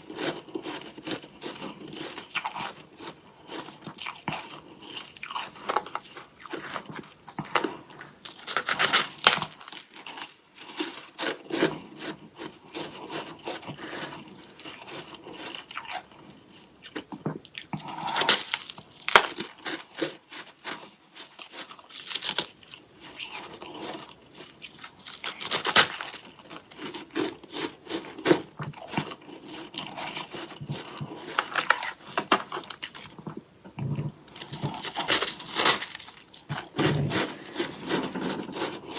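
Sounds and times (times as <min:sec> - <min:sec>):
crunching of frozen frost: 0:04.8 - 0:12.1, 0:17.9 - 0:22.5, 0:23.2 - 0:33.3, 0:34.3 - 0:38.9.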